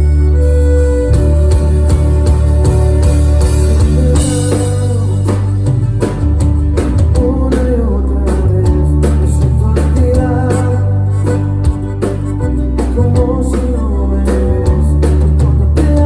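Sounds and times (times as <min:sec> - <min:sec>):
wavering melody line: 0:00.0 - 0:06.8
guitar: 0:00.0 - 0:16.0
heavy bass notes: 0:00.0 - 0:16.0
drum hits: 0:01.1 - 0:16.0.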